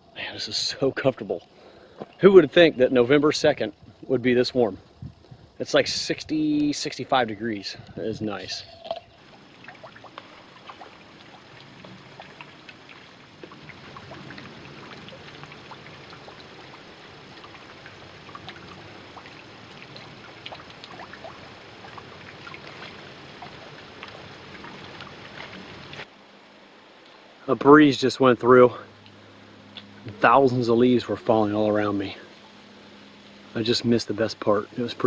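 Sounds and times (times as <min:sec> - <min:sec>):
breeze through trees: 0:00.0 - 0:35.0
ticks of falling leaves: 0:06.4 - 0:26.1.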